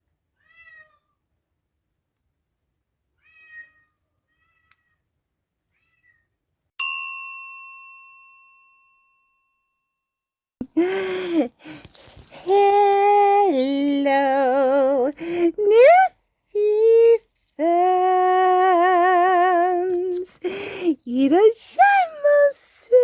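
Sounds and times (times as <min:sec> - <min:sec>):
cat meowing: 0:00.4 - 0:01.2, 0:03.2 - 0:05.0, 0:05.7 - 0:06.2
bell ding: 0:06.8 - 0:09.8.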